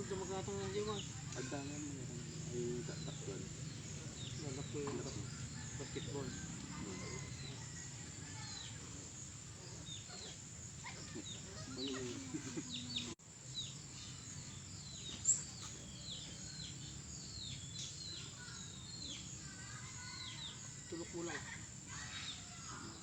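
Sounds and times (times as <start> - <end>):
birds chirping: 0.0 - 23.0.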